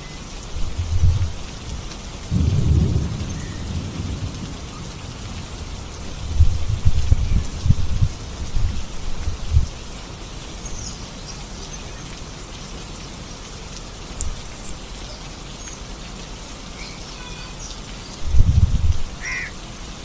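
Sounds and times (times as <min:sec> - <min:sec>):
steady rain falling: 0:00.0 - 0:20.0
low rumbling thumps: 0:05.4 - 0:09.8
faint high chirps: 0:14.2 - 0:18.2.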